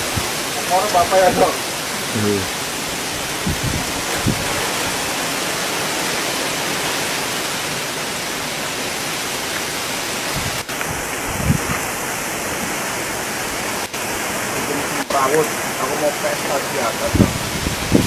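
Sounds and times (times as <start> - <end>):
strong wind: 0.0 - 7.8, 9.4 - 14.5, 16.9 - 18.0
heavy rain: 0.0 - 18.0.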